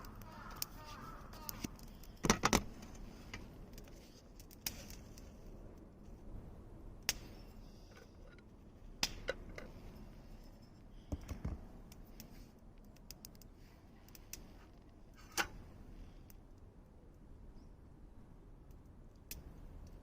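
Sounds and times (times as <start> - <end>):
campfire pops: 0.0 - 5.3, 7.0 - 7.6, 8.9 - 9.7, 18.7 - 20.0
faint fire ticks: 0.0 - 6.2, 6.9 - 9.7, 10.9 - 17.3, 18.6 - 20.0.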